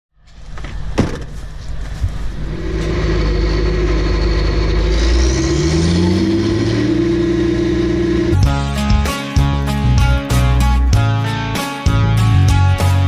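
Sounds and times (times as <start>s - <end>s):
large engine revving: 2.3s - 9.0s.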